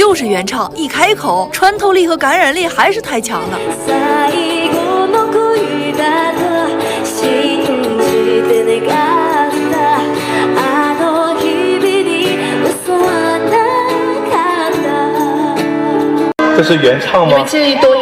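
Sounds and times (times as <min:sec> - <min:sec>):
guitar accompaniment: 0:00.0 - 0:18.0
woman singing pop ballad: 0:02.6 - 0:16.3.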